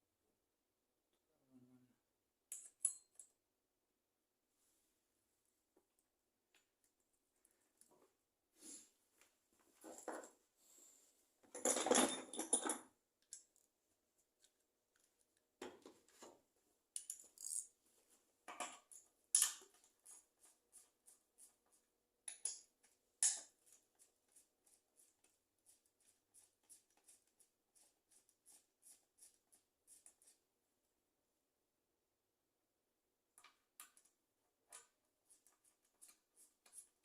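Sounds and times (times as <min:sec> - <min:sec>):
metallic clinks and taps: 0:02.5 - 0:03.4, 0:17.0 - 0:17.7, 0:18.5 - 0:20.2, 0:22.3 - 0:23.5
rustling clatter of metal parts: 0:11.5 - 0:12.8.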